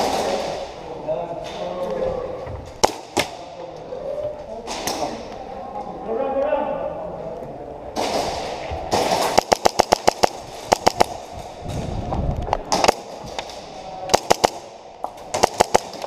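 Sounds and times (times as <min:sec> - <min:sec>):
airsoft guns firing: 0:00.0 - 0:00.8, 0:02.8 - 0:03.5, 0:08.0 - 0:11.5, 0:12.7 - 0:16.0.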